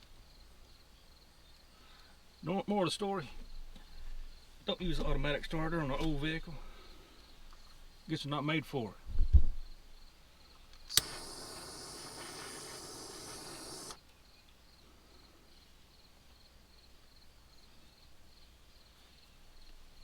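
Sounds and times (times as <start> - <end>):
torch flame hissing: 10.9 - 14.0
torch lighting click: 10.9 - 14.0.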